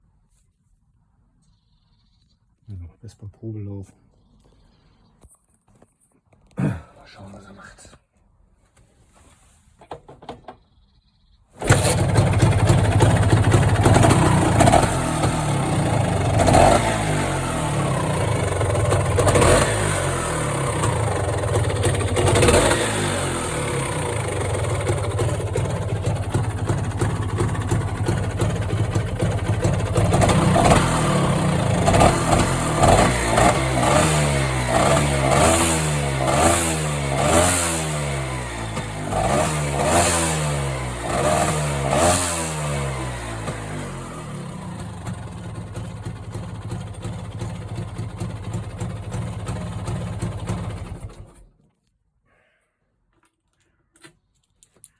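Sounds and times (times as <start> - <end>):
scooter engine revving: 11.6 - 51.5.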